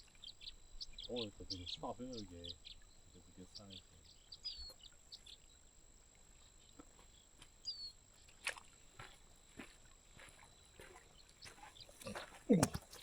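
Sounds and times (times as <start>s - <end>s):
high bird chirp: 0.0s - 5.7s, 7.6s - 8.0s.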